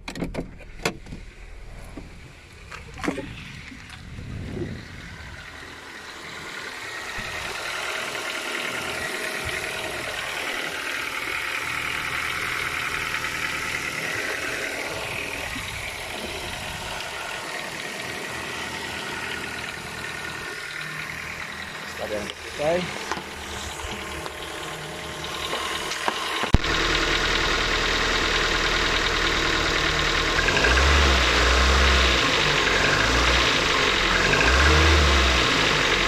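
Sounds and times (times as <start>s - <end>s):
car engine idling with ticking clatter: 0.0s - 36.0s.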